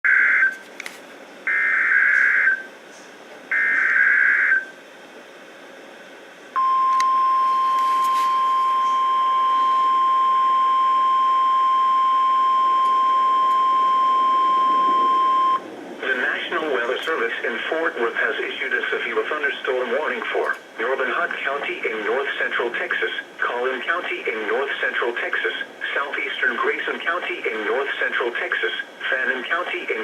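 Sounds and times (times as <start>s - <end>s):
steady alarm tone: 1.5s - 2.7s, 3.5s - 4.7s, 6.6s - 15.7s.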